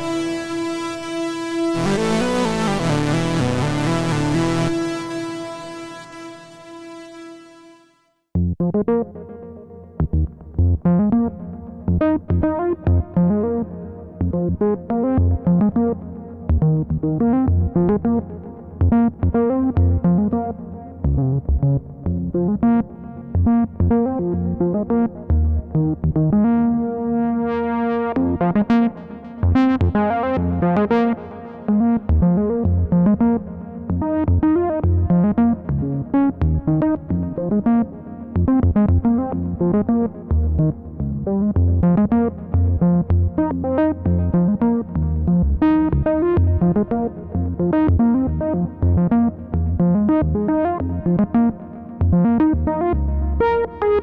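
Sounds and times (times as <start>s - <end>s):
synthesizer bass line: 0.0s - 7.8s, 34.3s - 54.0s
synthesizer plucked notes: 0.0s - 7.8s, 10.0s - 54.0s
synthesizer sequenced pattern: 0.0s - 7.8s.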